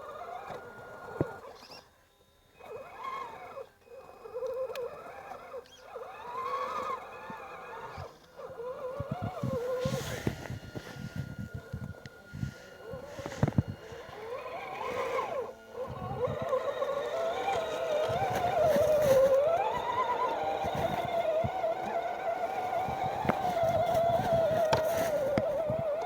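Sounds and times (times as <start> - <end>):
electric motor and gearbox whine: 0.0 - 26.0.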